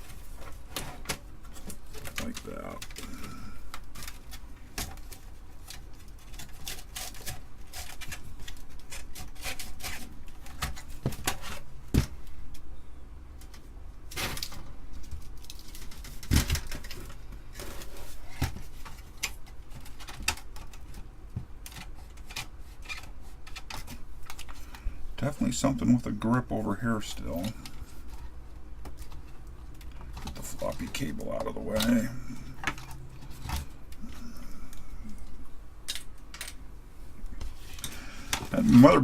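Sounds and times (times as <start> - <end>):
plastic parts clicking and tapping: 14.2 - 24.6.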